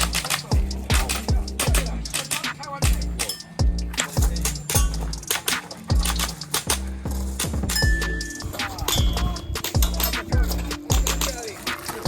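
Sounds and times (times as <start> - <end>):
deep bass kicks: 0.0 - 2.1, 2.8 - 5.2, 5.9 - 8.3, 9.0 - 11.2
music with steady beat: 0.0 - 12.0
sharp percussion: 0.0 - 12.0.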